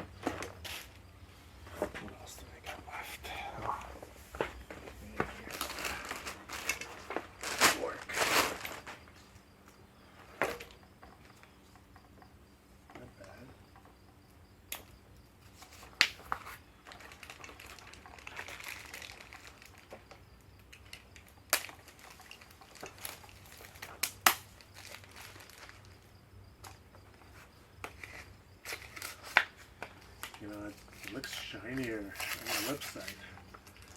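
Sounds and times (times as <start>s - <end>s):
packaging rustling: 4.6s - 9.2s, 15.6s - 20.2s, 20.8s - 26.0s, 28.0s - 33.9s
bike parts clicking and knocking: 9.6s - 25.9s, 26.6s - 33.9s.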